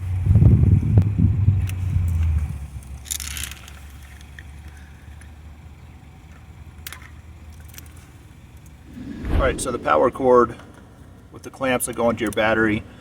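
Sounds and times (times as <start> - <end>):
low steady rumble: 8.8 - 11.2.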